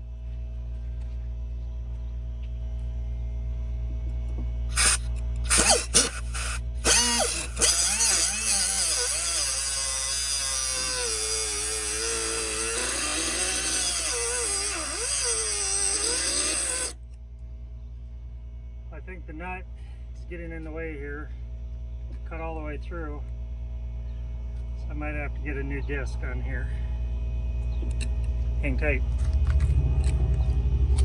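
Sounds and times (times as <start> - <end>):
angle grinder cutting metal: 4.7 - 17.0.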